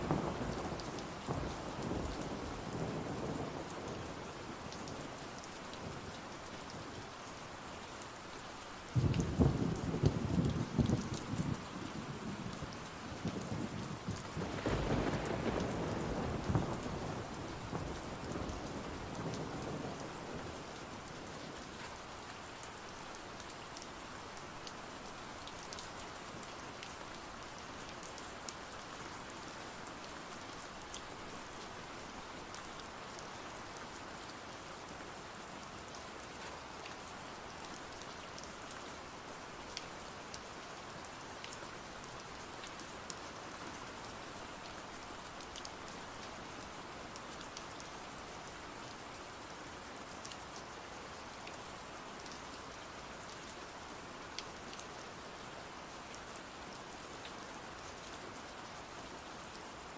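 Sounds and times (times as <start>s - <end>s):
rain falling on a surface: 0.0s - 59.9s
thunder rumbling: 13.6s - 20.0s.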